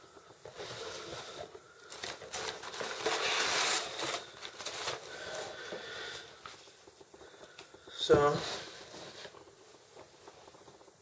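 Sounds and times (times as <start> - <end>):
plastic tubs rustling and clicking: 0.4 - 5.9.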